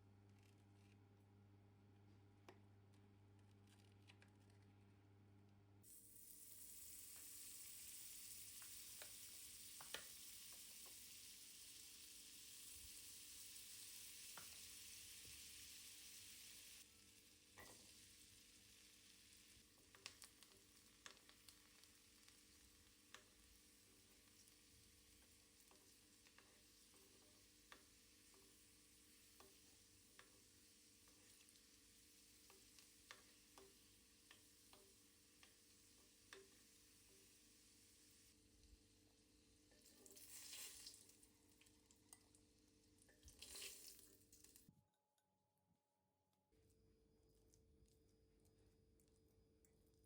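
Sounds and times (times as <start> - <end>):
food sizzling in a pan: 5.8 - 44.6.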